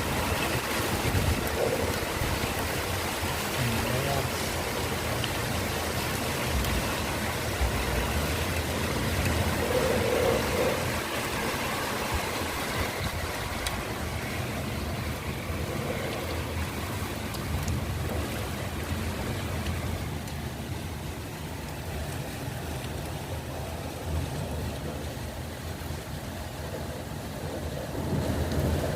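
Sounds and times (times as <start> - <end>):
wind buffeting microphone: 0.0 - 3.6, 4.5 - 20.0
wind and rain rushing: 0.0 - 28.9.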